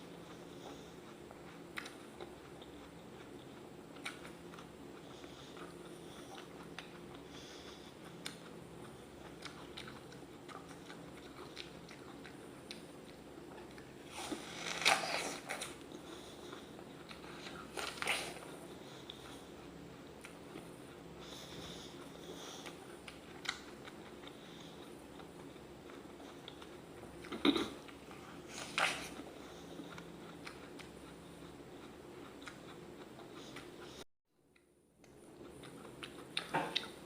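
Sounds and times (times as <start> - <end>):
apple chewing: 7.9 - 37.0
crunching apple bites: 13.8 - 16.0, 17.1 - 18.5.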